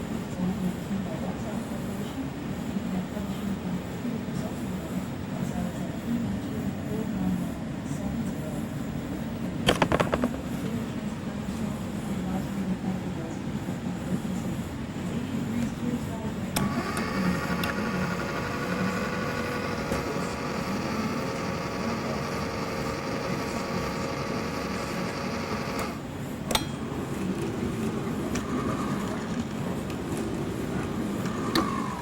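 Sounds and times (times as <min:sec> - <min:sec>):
small electric motor humming: 0:16.6 - 0:26.0, 0:31.2 - 0:32.0.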